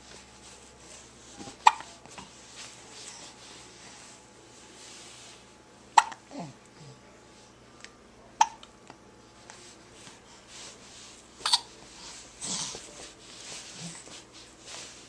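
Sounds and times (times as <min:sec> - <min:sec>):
person hiccuping: 0:06.0 - 0:06.6, 0:08.4 - 0:08.7.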